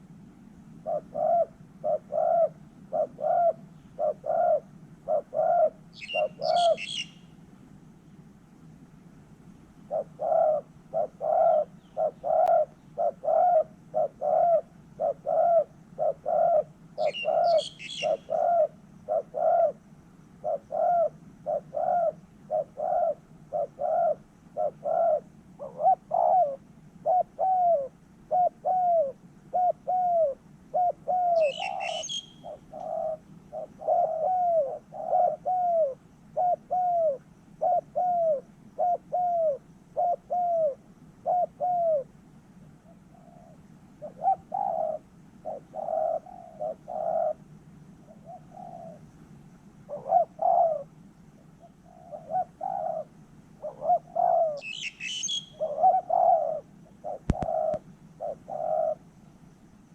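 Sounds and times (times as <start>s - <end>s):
dove cooing: 0.0s - 7.4s, 9.8s - 59.3s
small bird chirping: 0.9s - 7.4s, 9.9s - 19.8s, 29.9s - 42.0s, 49.9s - 59.0s.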